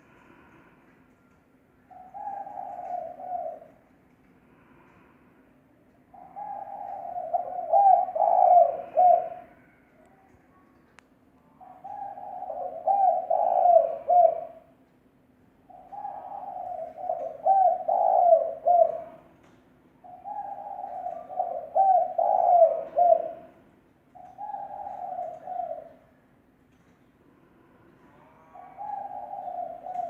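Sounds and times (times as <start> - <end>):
dove cooing: 1.9 - 3.9, 6.1 - 9.8, 11.5 - 14.7, 15.7 - 19.3, 20.0 - 23.6, 24.2 - 26.0, 28.1 - 30.0.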